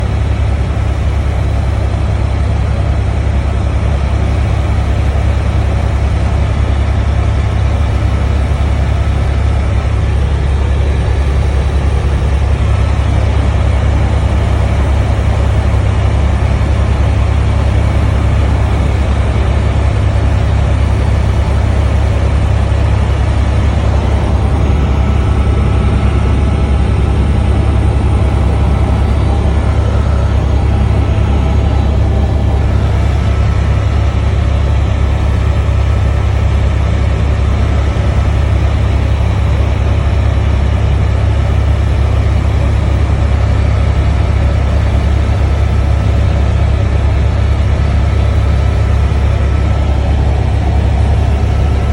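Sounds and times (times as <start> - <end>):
helicopter low drone: 0.0 - 51.9
faint higher tones: 22.3 - 34.2.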